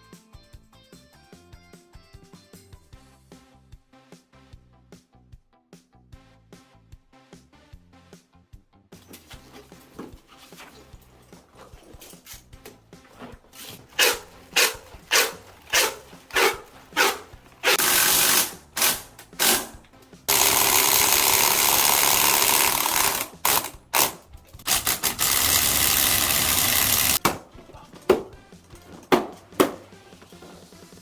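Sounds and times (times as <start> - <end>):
power tool running: 13.5 - 27.3.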